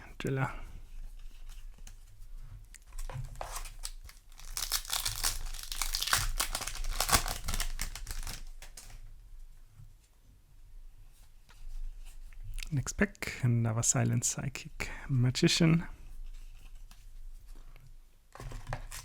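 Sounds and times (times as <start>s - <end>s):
foil wrapper tearing and crinkling: 3.0s - 9.0s, 18.6s - 19.0s.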